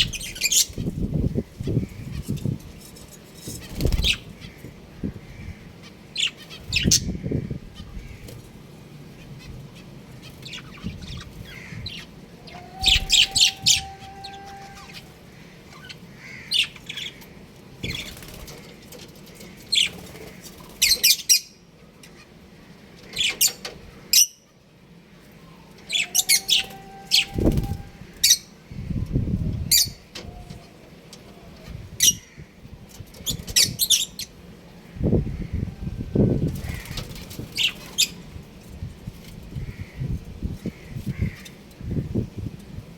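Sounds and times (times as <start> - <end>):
budgies chirping: 0.0 - 2.6, 3.5 - 24.6, 25.2 - 30.8, 36.6 - 38.3
wing flapping: 3.4 - 4.3, 17.8 - 18.8, 27.2 - 28.0, 36.4 - 38.2.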